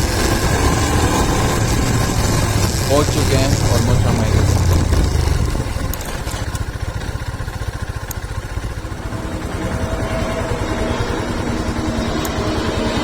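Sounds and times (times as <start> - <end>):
steady higher tone: 0.0 - 6.0, 7.6 - 13.0
motorcycle engine thumping: 1.5 - 11.8.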